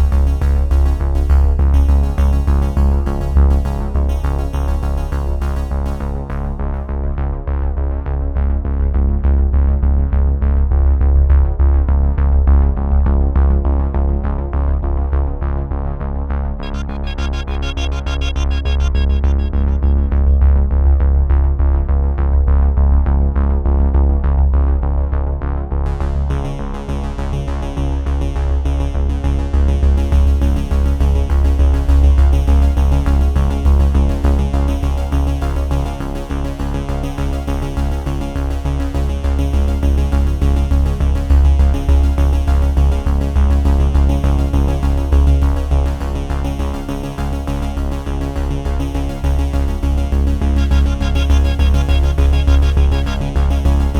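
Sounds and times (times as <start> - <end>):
electronic synthesizer music: 16.6 - 21.1, 49.4 - 53.9.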